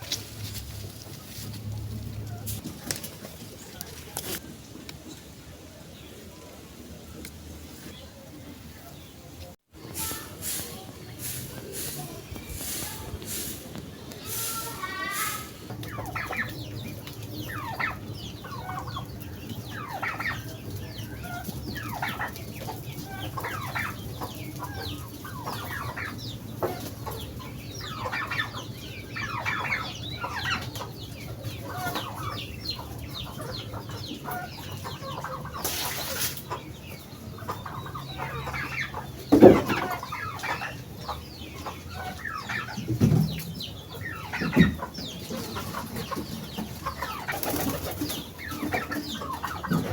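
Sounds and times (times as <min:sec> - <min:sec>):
chickens clucking: 0:00.0 - 0:49.9.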